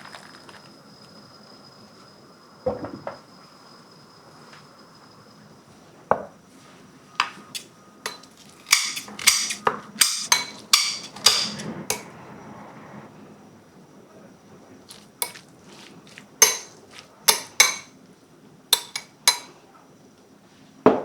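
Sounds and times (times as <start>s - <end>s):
utensils clinking against dishes: 7.2s - 12.1s, 14.9s - 15.5s, 16.4s - 17.9s, 18.8s - 19.5s.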